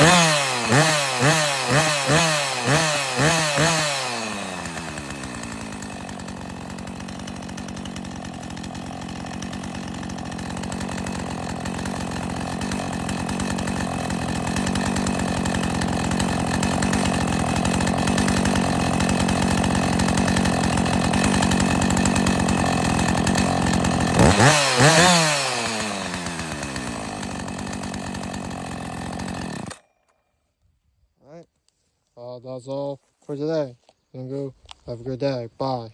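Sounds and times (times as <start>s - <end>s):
chainsaw idling and revving: 0.0s - 30.2s.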